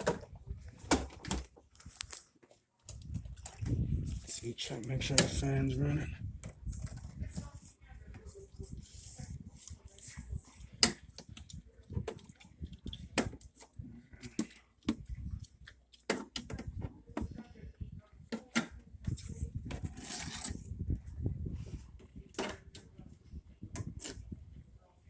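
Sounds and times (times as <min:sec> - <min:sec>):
hands handling refrigerator parts: 0:00.0 - 0:05.8.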